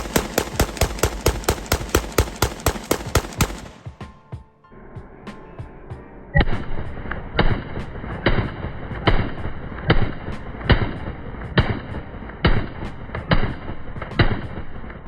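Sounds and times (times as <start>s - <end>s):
rifle single shots: 0.0s - 3.9s.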